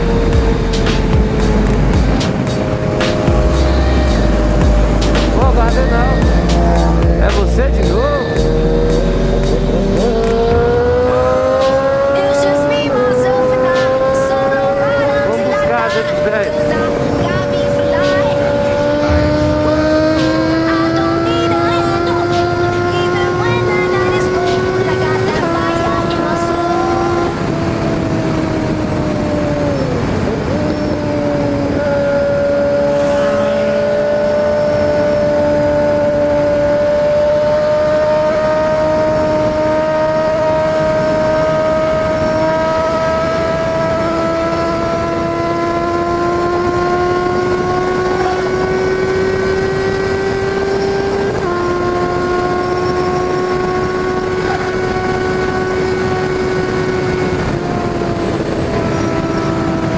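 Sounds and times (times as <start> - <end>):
wind rushing: 0.0 - 12.2, 14.6 - 22.6
motorcycle engine running: 0.0 - 59.9.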